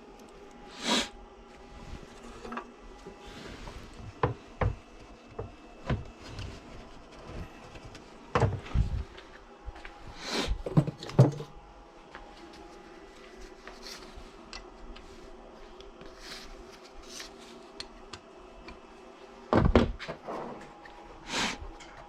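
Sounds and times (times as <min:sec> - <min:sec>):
objects knocking and clattering: 0:10.6 - 0:11.6.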